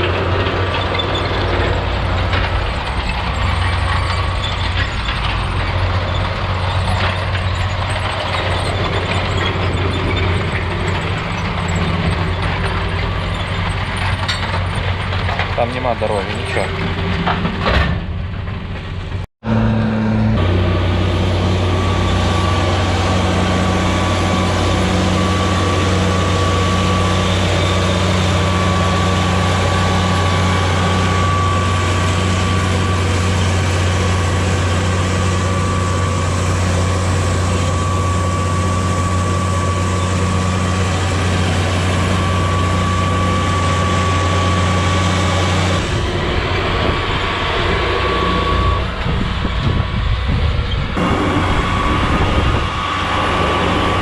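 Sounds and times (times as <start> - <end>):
tractor engine running: 0.0 - 54.0.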